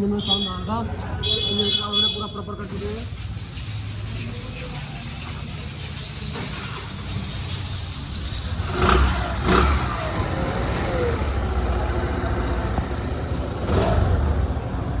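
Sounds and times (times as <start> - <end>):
scooter engine running and revving: 6.8 - 15.0.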